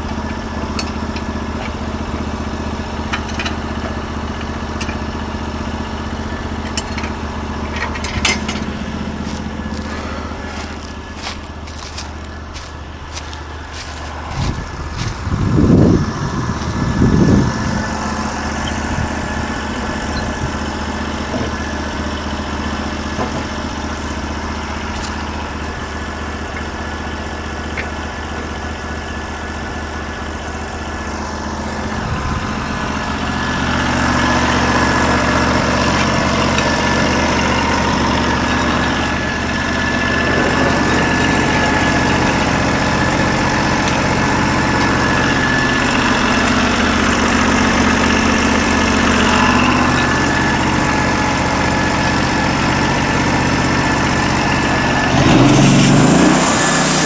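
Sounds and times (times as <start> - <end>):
gasoline engine running: 0.0 - 57.0
steady high whine: 5.8 - 21.6.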